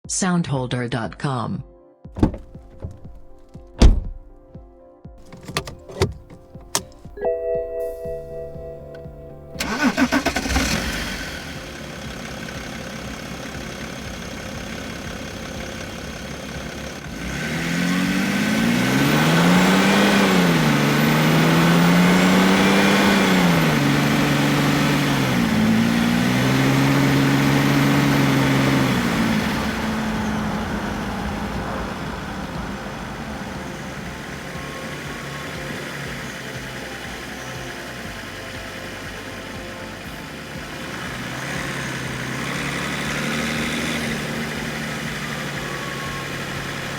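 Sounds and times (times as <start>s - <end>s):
diesel engine idling: 5.2s - 46.9s
diesel engine starting: 5.2s - 46.9s
engine accelerating: 5.2s - 46.9s.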